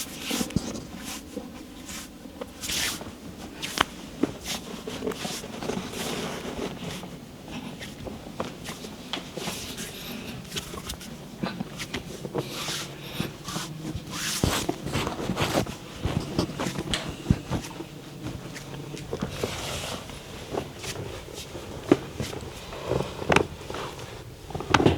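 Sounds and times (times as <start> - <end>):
hands rubbing skin and cloth: 0.0 - 24.1.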